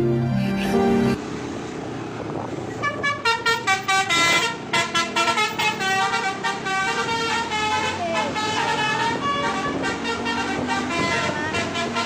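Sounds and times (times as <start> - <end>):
street noise: 0.0 - 12.0
bus musical horn melody: 2.8 - 12.0.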